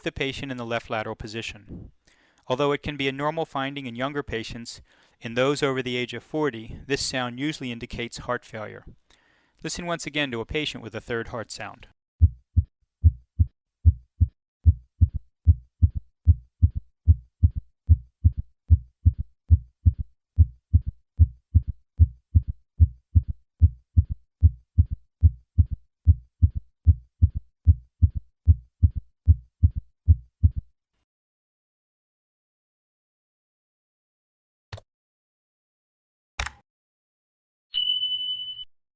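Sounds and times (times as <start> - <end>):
galloping heartbeat through stethoscope: 12.2 - 30.7.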